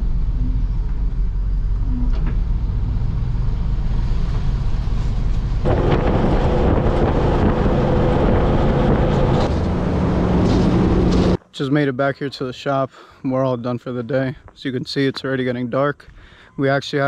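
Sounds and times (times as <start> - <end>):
truck engine and road rumble: 0.0 - 11.5.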